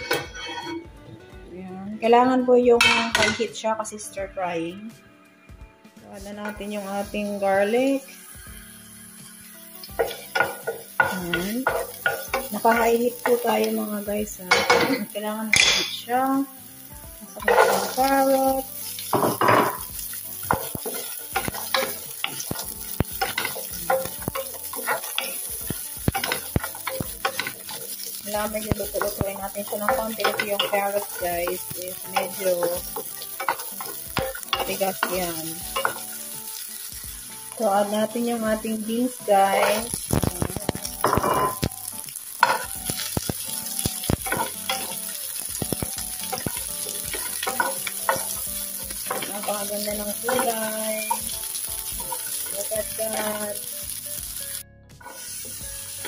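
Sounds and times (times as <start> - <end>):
utensil scraping a pan: 0.0 - 0.9, 17.3 - 36.3, 42.4 - 53.6
vegetables sizzling in oil: 6.1 - 56.0.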